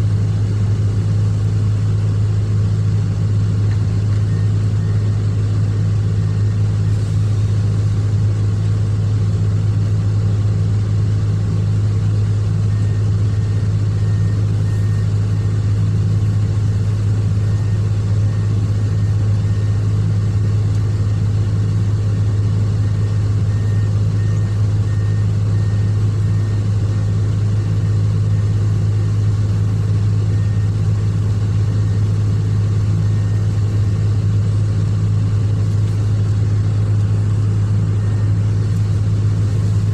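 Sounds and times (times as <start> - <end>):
excavator diesel engine humming: 0.0 - 39.9.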